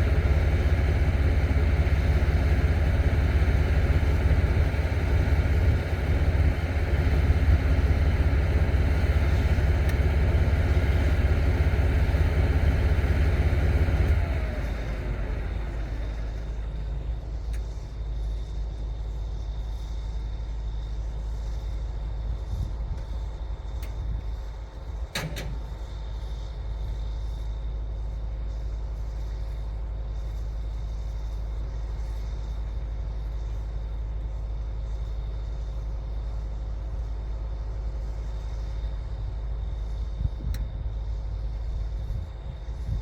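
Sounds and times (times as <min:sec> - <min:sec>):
bulldozer diesel engine rumbling: 0:00.0 - 0:19.4
click: 0:09.6 - 0:10.6, 0:17.5 - 0:17.7, 0:25.1 - 0:25.7.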